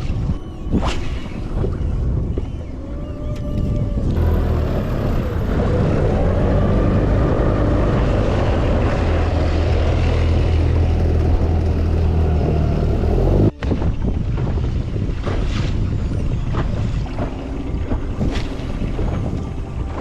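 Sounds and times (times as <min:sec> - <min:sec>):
water around hull: 0:00.0 - 0:20.0
wind on microphone: 0:00.0 - 0:20.0
outboard motor running: 0:04.0 - 0:15.4.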